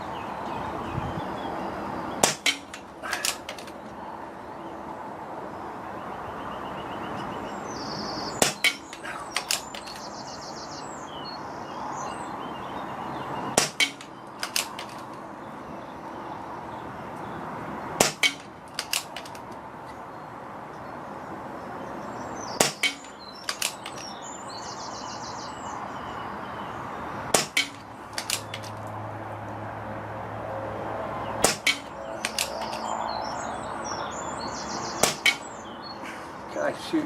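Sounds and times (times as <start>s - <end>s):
wind on microphone: 0.5s - 1.5s
air rifle shots: 2.2s - 3.8s, 8.4s - 10.0s, 13.6s - 15.1s, 18.0s - 19.4s, 22.6s - 24.1s, 27.3s - 28.7s, 31.4s - 32.8s, 35.0s - 35.5s
quick clicks: 8.4s - 10.1s, 13.6s - 15.2s, 18.0s - 19.6s, 22.6s - 24.1s, 27.4s - 28.8s, 31.4s - 32.9s.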